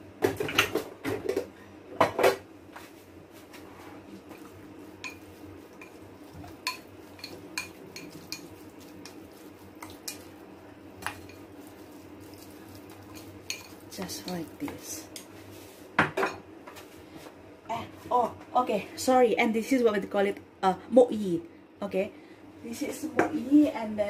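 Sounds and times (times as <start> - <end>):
utensil clinking against a bowl: 5.0 - 10.3, 11.0 - 14.8.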